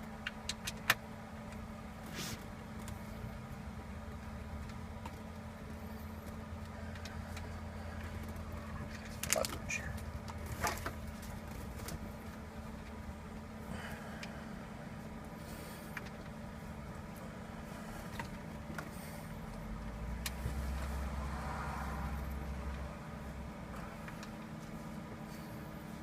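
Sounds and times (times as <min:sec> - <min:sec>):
car cabin hum: 0:00.0 - 0:26.0
heavy low rumble: 0:01.6 - 0:26.0.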